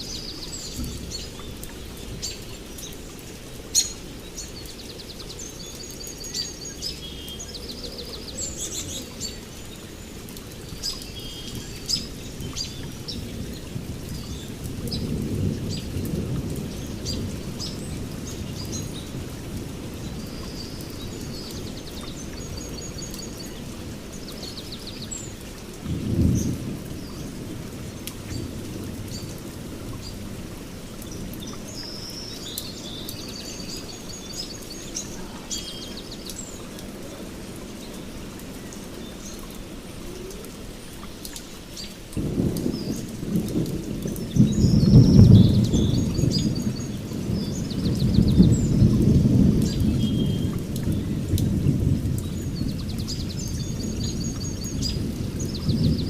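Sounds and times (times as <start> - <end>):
songbirds chirping: 0.0 - 56.0
steady rain: 0.0 - 56.0
thunder rolling: 42.2 - 52.8
sharp thunderclap: 42.2 - 53.5.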